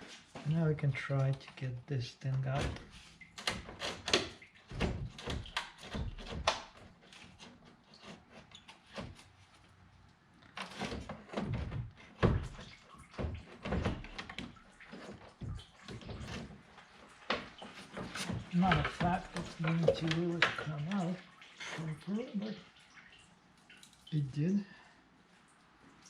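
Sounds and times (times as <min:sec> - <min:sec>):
knocks and scraping clicks: 0:10.6 - 0:21.0.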